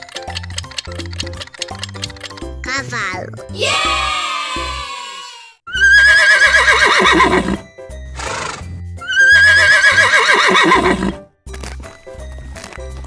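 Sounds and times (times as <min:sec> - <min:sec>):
horse neighing: 0:05.7 - 0:07.6, 0:08.2 - 0:11.2
horse breathy blow: 0:07.0 - 0:07.6, 0:10.4 - 0:11.2.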